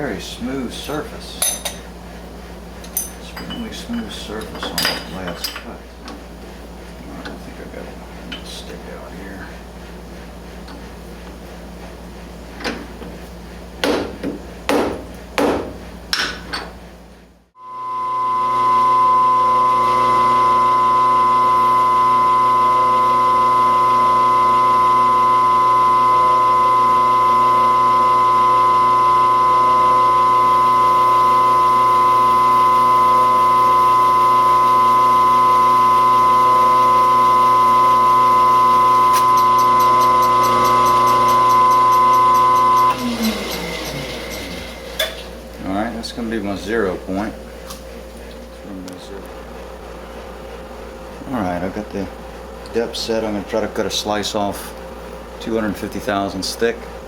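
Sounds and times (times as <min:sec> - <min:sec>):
milling machine running: 0:17.7 - 0:47.5.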